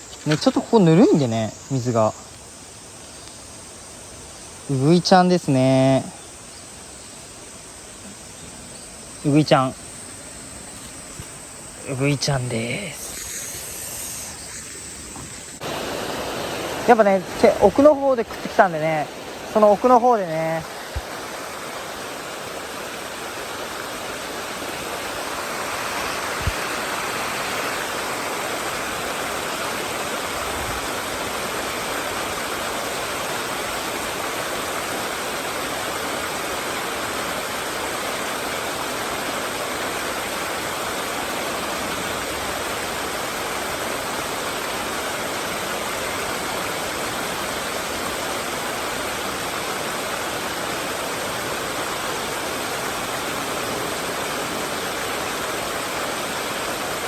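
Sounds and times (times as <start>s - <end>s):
stream water rushing: 0.0s - 6.2s, 7.2s - 57.0s
faint click: 3.2s - 3.4s.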